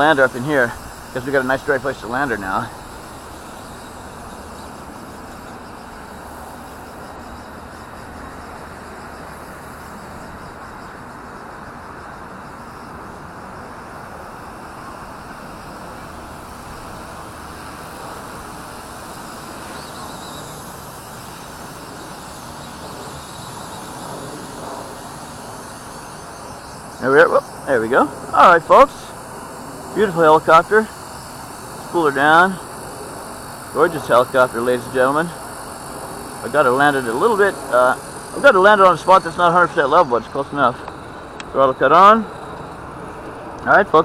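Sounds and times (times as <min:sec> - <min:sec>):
rc helicopter motor and rotors: 0:00.0 - 0:44.0.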